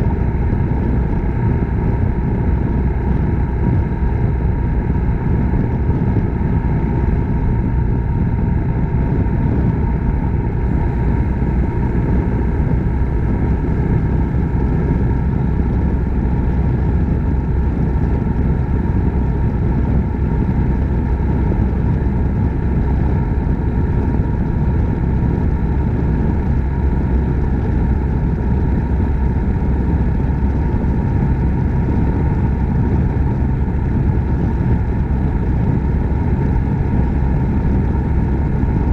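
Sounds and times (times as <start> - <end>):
motorcycle engine running: 0.0 - 38.9
road noise: 0.0 - 38.9.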